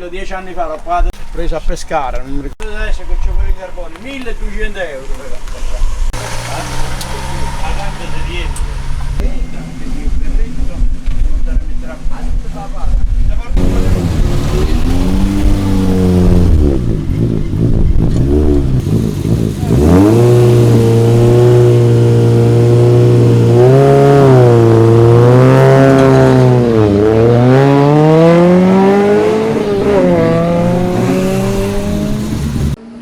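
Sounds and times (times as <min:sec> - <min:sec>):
car engine revving hard: 0:05.6 - 0:09.2, 0:13.6 - 0:32.8.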